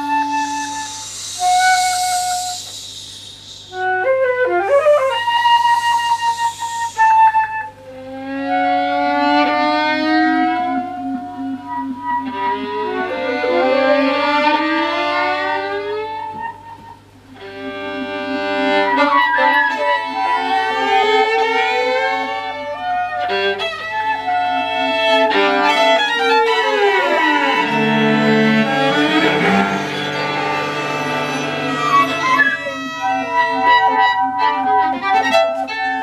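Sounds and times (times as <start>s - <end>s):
steady low drone: 23.5s - 35.3s.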